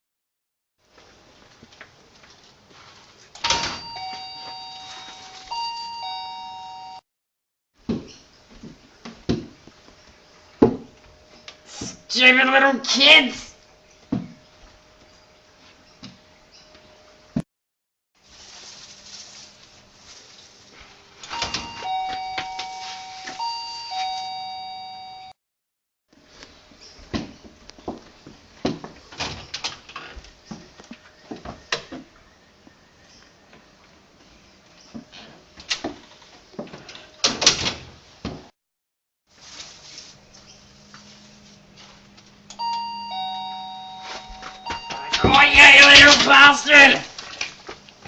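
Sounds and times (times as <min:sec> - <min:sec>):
doorbell clicks: 0:03.4 - 0:07.0, 0:21.4 - 0:25.3, 0:42.5 - 0:45.4
two-tone doorbell chime: 0:03.5 - 0:07.0, 0:21.4 - 0:25.4, 0:42.6 - 0:45.5.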